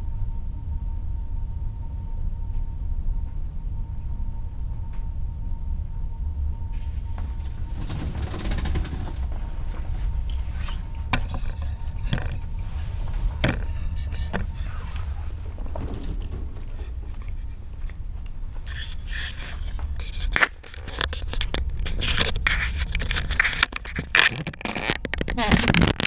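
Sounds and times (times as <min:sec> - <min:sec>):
low rumble of ship: 0:00.0 - 0:26.0
brief rattle: 0:07.2 - 0:10.5, 0:13.2 - 0:17.1.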